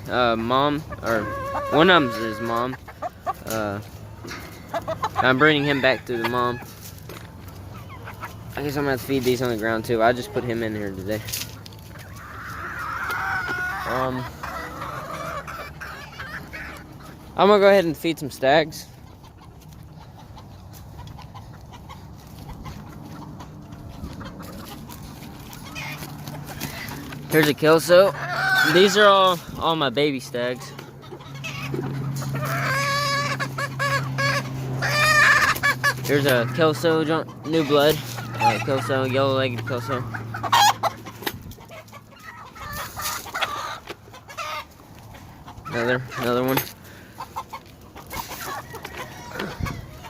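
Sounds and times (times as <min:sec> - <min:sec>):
chickens clucking softly: 0:00.0 - 0:50.0
loud high chicken call: 0:01.0 - 0:02.6, 0:12.1 - 0:16.8, 0:28.1 - 0:29.4, 0:31.4 - 0:36.0, 0:48.1 - 0:50.0.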